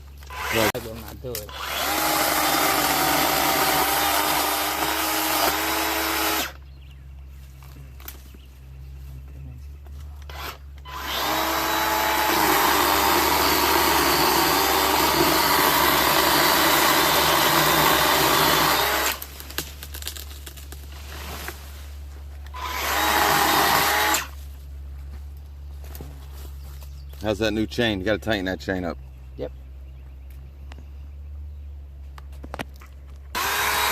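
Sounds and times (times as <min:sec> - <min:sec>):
electric chainsaw motor whining: 0:00.2 - 0:00.8, 0:01.4 - 0:06.6, 0:10.2 - 0:19.3, 0:22.5 - 0:24.4, 0:33.4 - 0:33.9.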